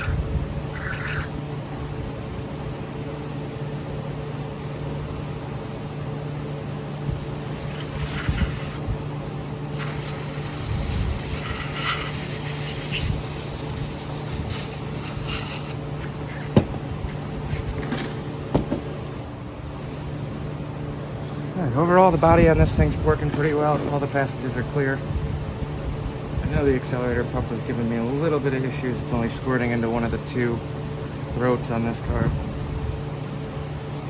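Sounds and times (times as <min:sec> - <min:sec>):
pressurised spray hissing: 0:09.7 - 0:15.8.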